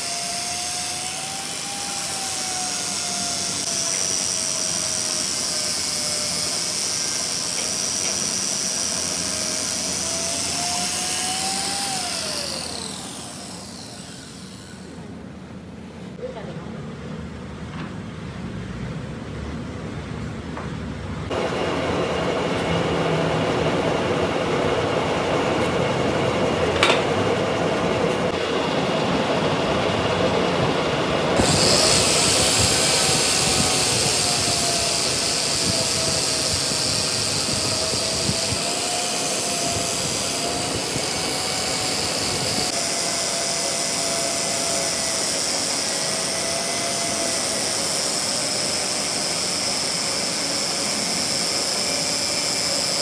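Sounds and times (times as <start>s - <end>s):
workshop machinery running: 0.0s - 16.1s, 20.1s - 53.0s
strong hiss: 31.4s - 42.7s.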